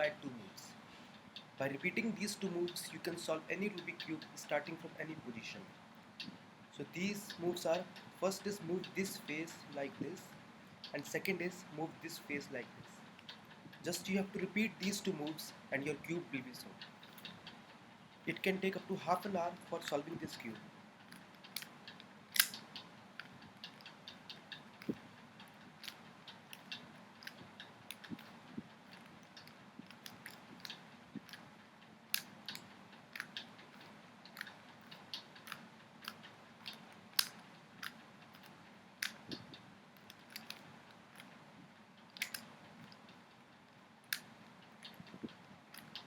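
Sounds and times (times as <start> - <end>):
puzzle cube twisting clicks: 7.0 - 10.2, 18.3 - 31.5, 32.1 - 41.3, 42.1 - 43.0, 44.1 - 46.0.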